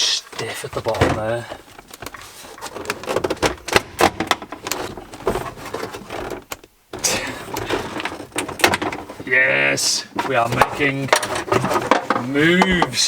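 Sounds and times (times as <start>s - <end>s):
plastic trim clicking and rattling: 7.5s - 9.2s.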